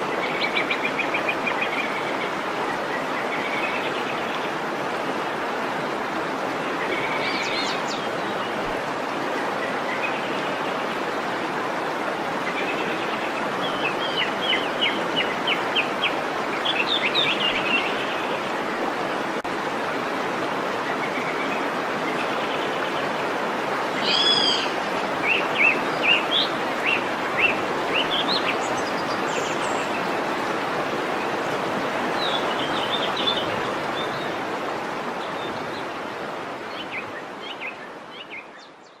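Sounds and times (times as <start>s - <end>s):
waterfall rushing: 0.0s - 38.3s
birds chirping: 20.9s - 30.6s.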